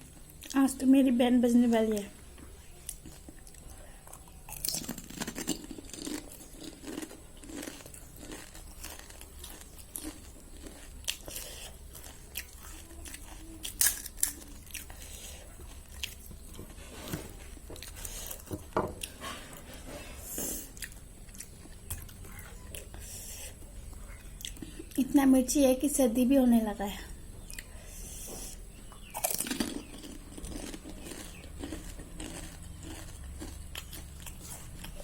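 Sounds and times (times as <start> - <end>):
person chewing: 2.4 - 25.0, 27.4 - 35.0
crisp shells crunching: 4.5 - 12.6, 13.2 - 14.9, 29.2 - 35.0.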